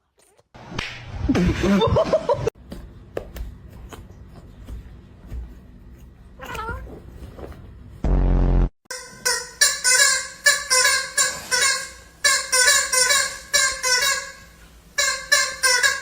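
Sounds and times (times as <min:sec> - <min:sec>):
cat yowling: 0:06.4 - 0:06.9.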